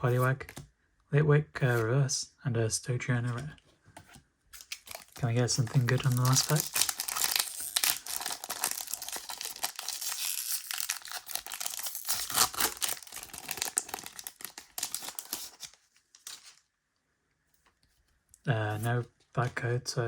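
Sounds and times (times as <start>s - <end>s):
foil wrapper tearing and crinkling: 4.6s - 16.6s.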